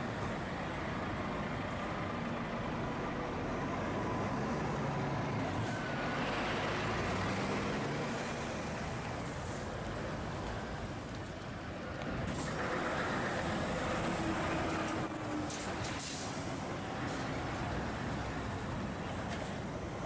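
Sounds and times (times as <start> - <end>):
lorry diesel engine running: 12.3 - 15.4.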